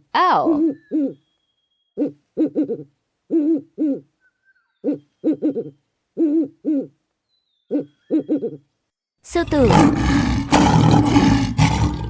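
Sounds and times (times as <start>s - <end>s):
owl hooting: 0.5s - 7.0s, 7.7s - 8.6s.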